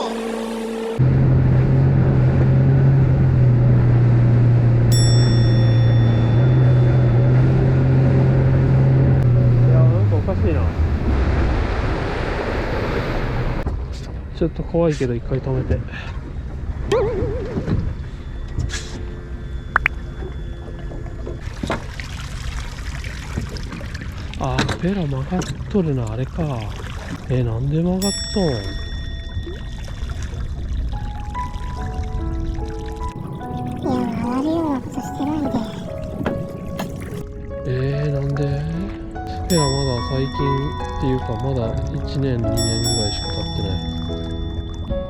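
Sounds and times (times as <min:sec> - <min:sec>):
outboard motor running: 0:00.0 - 0:12.7, 0:26.6 - 0:37.4, 0:39.0 - 0:45.0
metallic ding: 0:04.9 - 0:07.2, 0:28.0 - 0:30.1, 0:39.5 - 0:41.4, 0:42.6 - 0:45.0
water splashing at a boat: 0:04.9 - 0:45.0.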